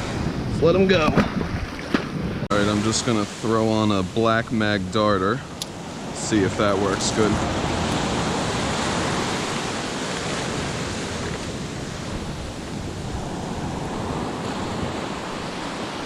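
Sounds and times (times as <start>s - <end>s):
wind on microphone: 0.0s - 3.3s, 5.5s - 16.0s
ocean surf washing on beach: 0.0s - 16.0s.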